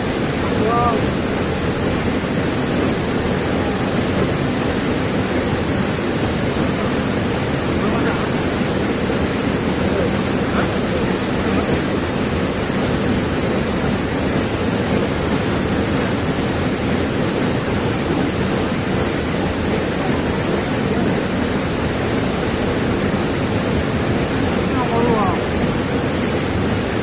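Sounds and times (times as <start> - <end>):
waterfall and river rushing: 0.0 - 27.0.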